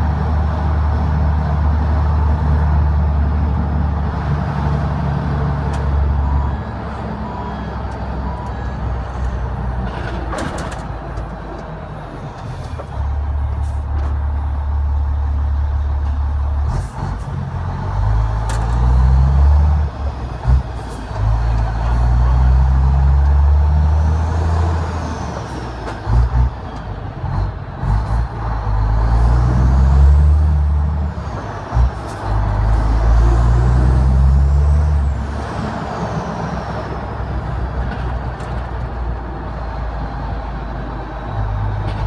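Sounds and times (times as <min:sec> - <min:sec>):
truck diesel engine drone: 0:00.0 - 0:42.0.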